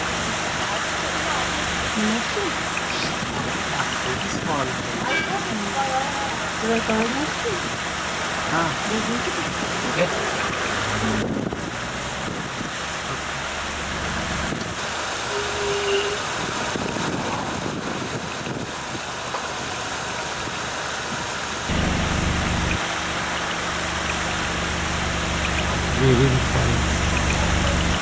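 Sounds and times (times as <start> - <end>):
waterfall rushing: 0.0 - 28.0
low rumble: 21.6 - 28.0.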